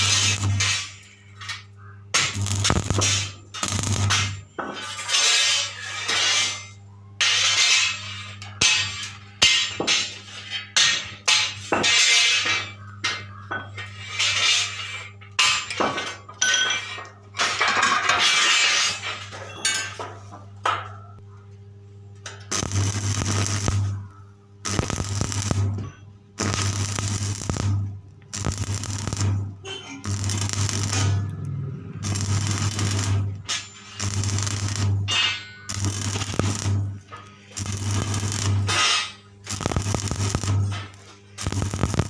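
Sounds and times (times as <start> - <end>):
welding machine hum: 0.0 - 5.9, 22.2 - 42.0
arc welding crackling sizzle: 0.0 - 12.5, 13.8 - 15.7, 22.2 - 42.0.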